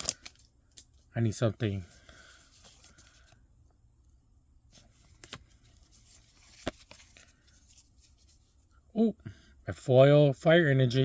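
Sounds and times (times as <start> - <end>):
cards and foil pack rustling: 0.0 - 1.0, 1.8 - 3.4, 4.7 - 8.6.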